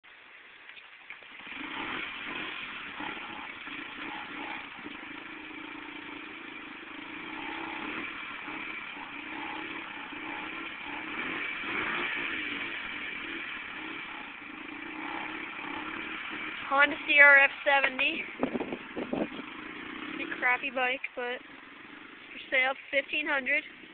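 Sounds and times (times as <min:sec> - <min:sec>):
dirt bike engine running: 0:01.4 - 0:23.9.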